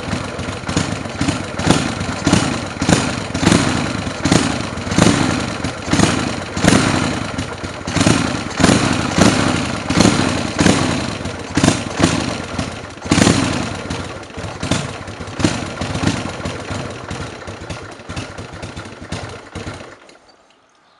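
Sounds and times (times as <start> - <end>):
motorcycle engine idling: 0.0 - 20.7.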